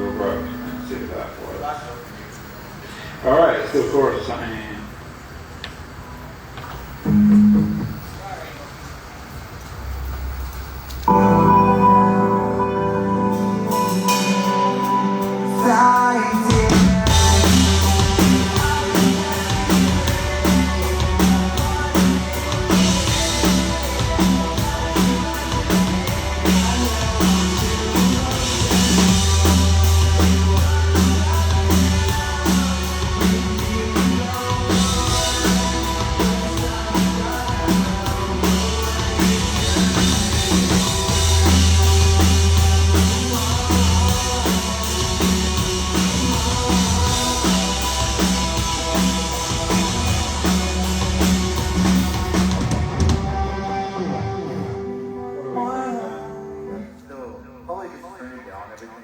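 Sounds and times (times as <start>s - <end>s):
keyboard chords: 7.0s - 8.0s, 11.1s - 57.9s
drums and bass beat: 7.1s - 8.1s, 13.3s - 54.6s.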